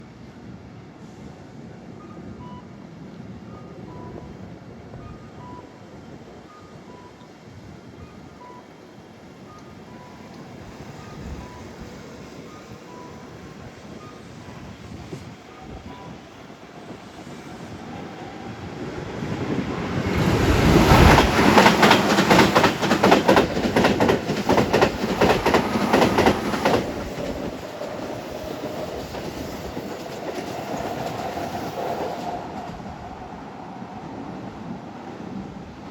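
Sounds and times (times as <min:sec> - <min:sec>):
train wheels clacking: 0:17.5 - 0:32.8.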